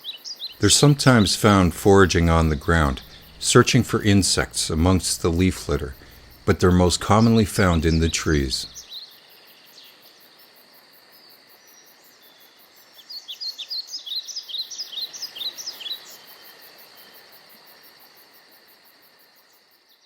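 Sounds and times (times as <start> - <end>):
faint insect hum: 0.0 - 20.0
bird chirping: 0.6 - 8.8.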